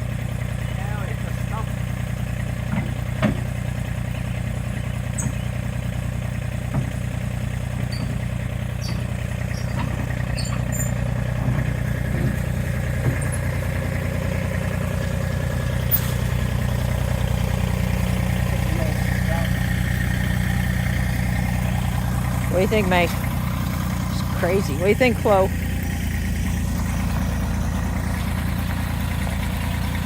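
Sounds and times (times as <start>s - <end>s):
engine idling: 0.0s - 30.0s
light clanks and knocks: 2.7s - 3.6s, 6.6s - 7.1s, 7.9s - 13.6s.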